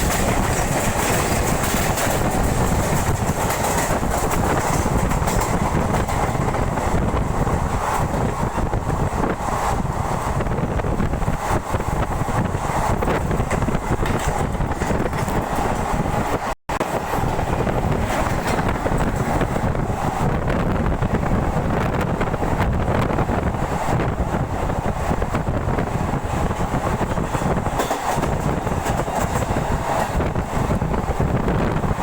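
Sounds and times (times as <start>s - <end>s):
train rumbling at speed: 0.0s - 32.0s
wind buffeting microphone: 0.0s - 32.0s.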